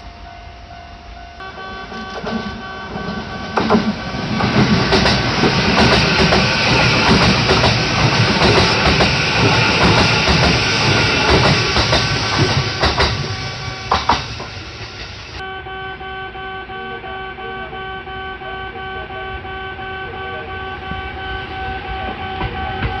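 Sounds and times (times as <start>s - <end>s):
level crossing warning bell: 0.0s - 15.0s, 15.6s - 23.0s
train wheels clattering over rails: 1.9s - 15.4s, 21.9s - 23.0s.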